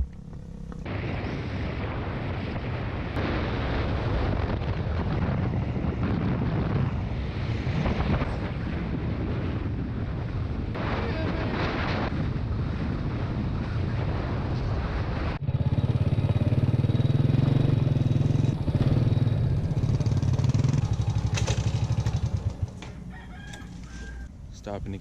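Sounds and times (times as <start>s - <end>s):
motorbike engine running: 0.0s - 2.5s, 15.4s - 23.1s
wind rushing over microphone: 0.0s - 25.0s.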